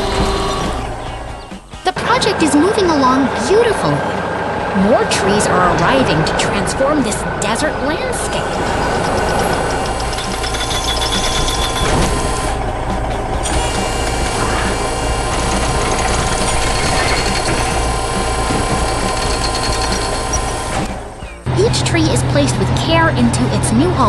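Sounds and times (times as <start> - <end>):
diesel engine rumbling: 0.0 - 24.0
mechanical ticking: 7.4 - 21.5.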